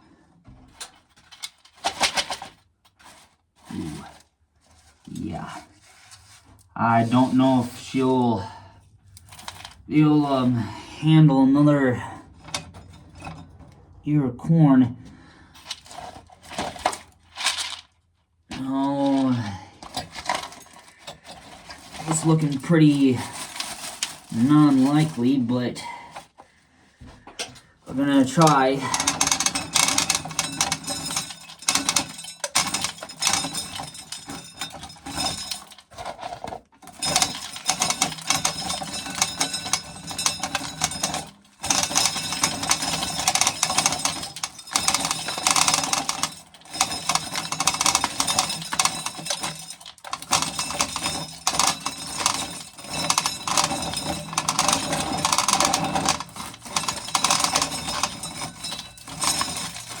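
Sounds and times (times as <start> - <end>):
corn kernels rattling into can: 15.6 - 17.9, 18.5 - 25.8, 28.1 - 60.0.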